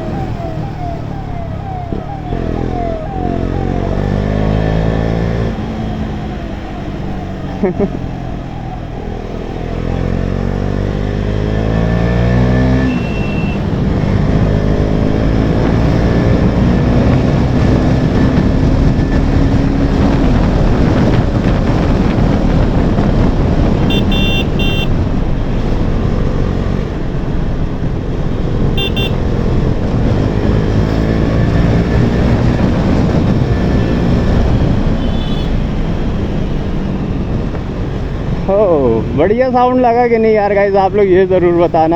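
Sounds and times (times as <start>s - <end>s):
motorcycle engine revving: 0.0s - 39.2s
vehicle horn beeps: 12.8s - 13.7s, 23.8s - 25.0s, 28.8s - 29.2s, 35.0s - 35.7s.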